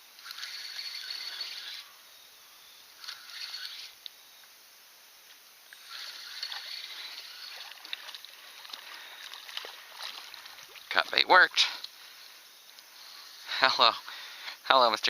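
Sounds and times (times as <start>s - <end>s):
fishing reel whirring and ticking: 0.1s - 2.0s, 3.0s - 4.0s, 5.7s - 10.7s.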